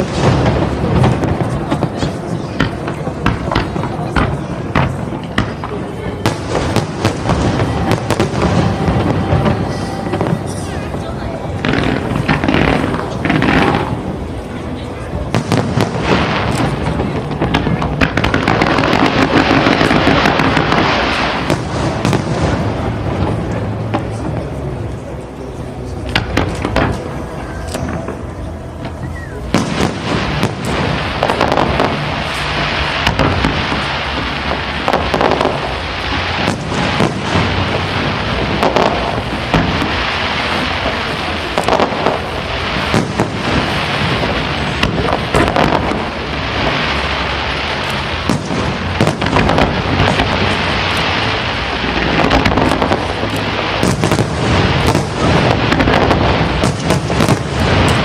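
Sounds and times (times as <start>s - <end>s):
fireworks bursting with crackling: 0.0s - 58.0s.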